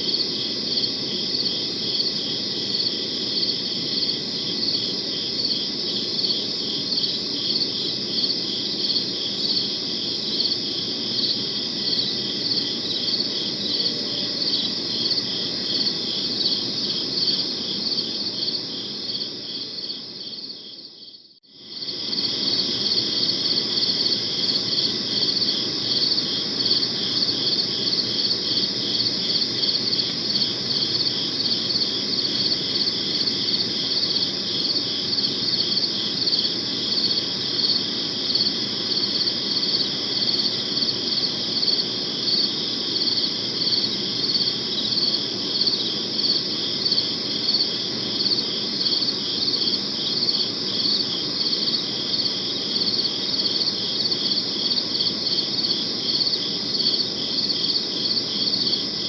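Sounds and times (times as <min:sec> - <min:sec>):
crickets chirping: 0:00.0 - 0:59.0.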